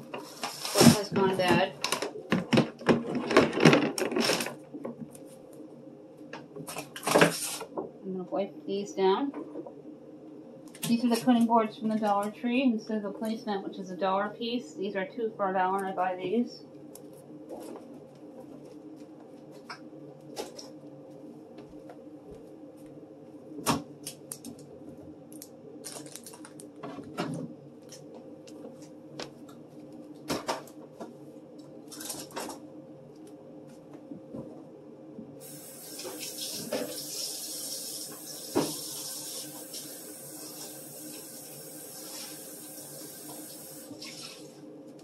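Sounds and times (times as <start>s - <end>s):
steady hum: 0.0s - 45.0s
kitchen tap running: 35.4s - 44.5s.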